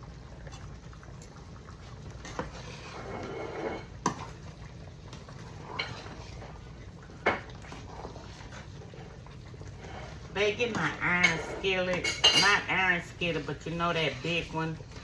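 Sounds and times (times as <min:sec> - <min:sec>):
beef and tomatoes simmering: 0:00.0 - 0:15.0
utensil clinking against pan: 0:11.1 - 0:12.7.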